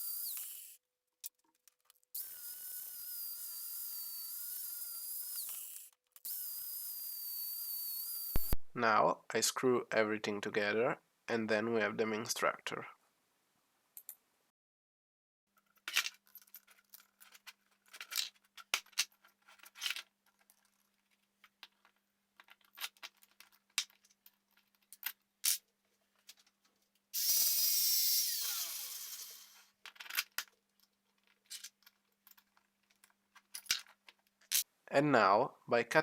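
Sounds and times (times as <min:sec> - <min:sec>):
power drill whining: 0:00.0 - 0:00.7, 0:27.2 - 0:29.7.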